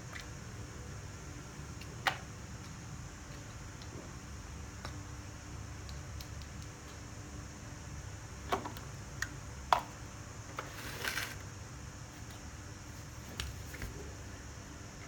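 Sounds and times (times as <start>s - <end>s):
scrape on plastic case: 10.6s - 11.4s.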